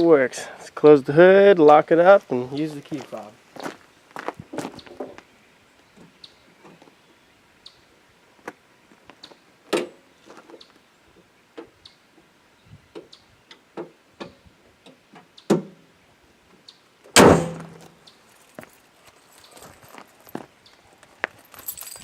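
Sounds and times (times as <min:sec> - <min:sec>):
car hood slamming shut: 0:17.2 - 0:17.9
footsteps and handling clicks: 0:17.7 - 0:22.0.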